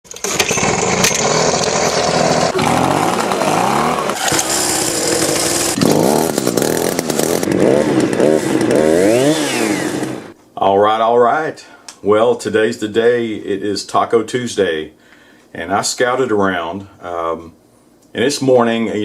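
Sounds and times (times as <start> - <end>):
chainsaw engine revving: 0.1 - 10.4.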